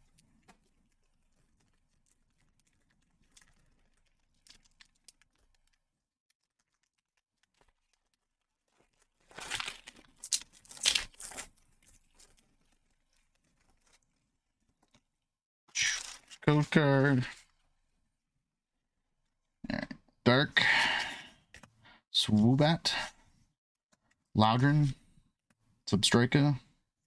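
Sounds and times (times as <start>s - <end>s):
foil wrapper tearing and crinkling: 1.1s - 14.0s.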